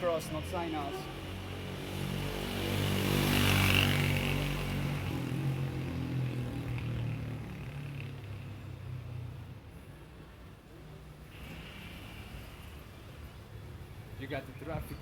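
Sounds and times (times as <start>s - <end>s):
motor vehicle passing: 1.5s - 9.0s.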